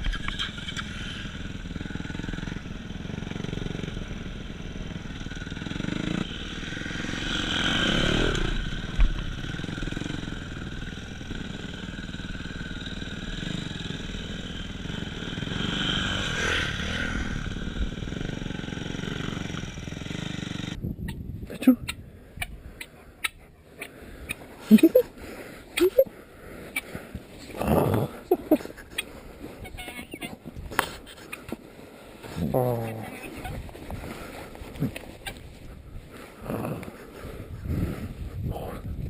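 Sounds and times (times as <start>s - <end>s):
motorcycle engine running: 0.0s - 21.3s.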